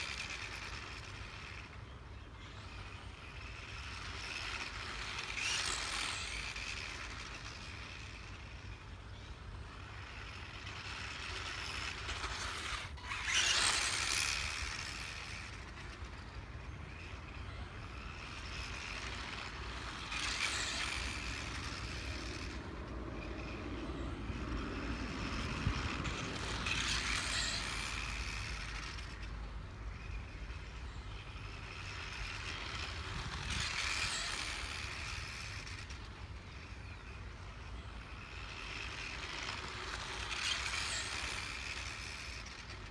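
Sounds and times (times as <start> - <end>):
mechanical squeaking and clattering: 16.7 - 42.9.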